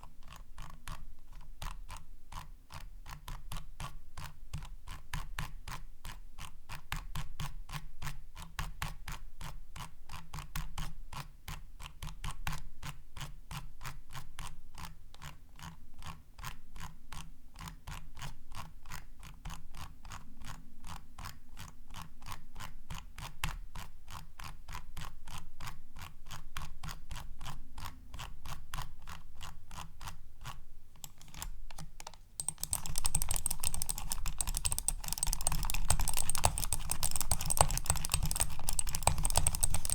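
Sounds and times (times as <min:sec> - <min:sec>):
computer mouse clicking: 0:31.0 - 0:39.9.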